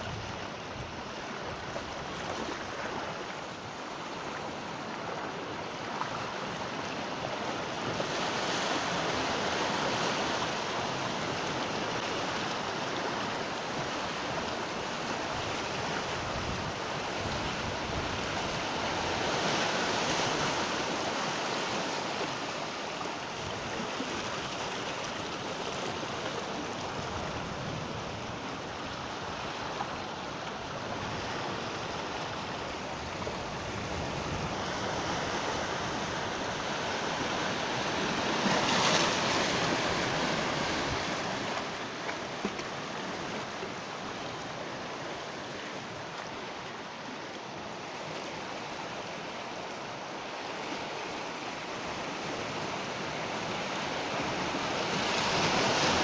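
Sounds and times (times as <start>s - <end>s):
sea waves washing on shore: 0.0s - 56.0s.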